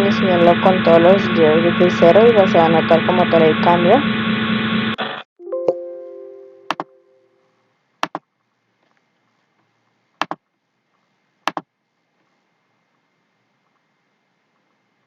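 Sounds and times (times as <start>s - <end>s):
pitched tone: 0.0s - 7.4s.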